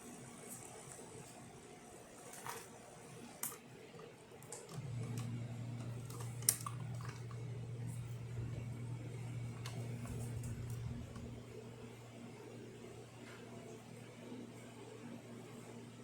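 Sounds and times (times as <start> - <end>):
espresso machine humming: 0.0 - 14.4.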